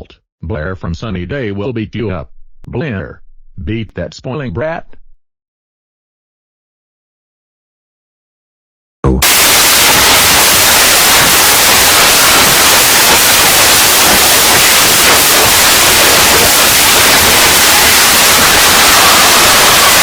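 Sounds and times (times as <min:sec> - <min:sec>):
loud static hiss: 0:09.2 - 0:20.0.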